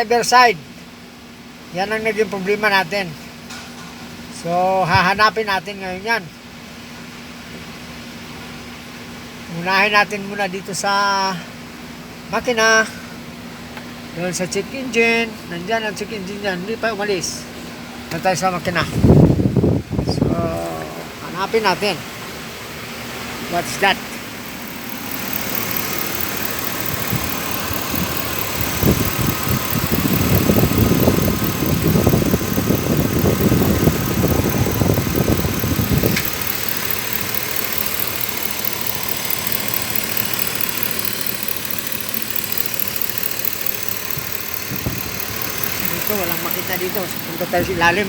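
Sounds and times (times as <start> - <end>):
engine idling: 20.7 - 48.0.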